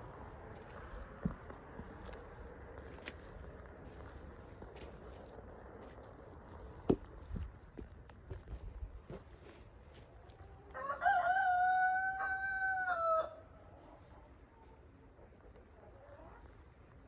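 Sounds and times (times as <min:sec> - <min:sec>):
rooster crowing: 0:10.7 - 0:13.4.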